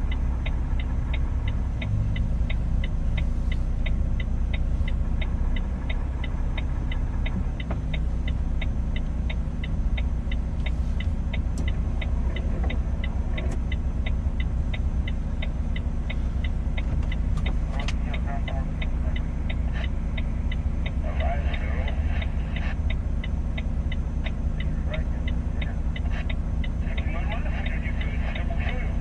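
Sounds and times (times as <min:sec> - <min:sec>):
steady ticking: 0:00.0 - 0:29.0
truck engine and road drone: 0:00.0 - 0:29.0.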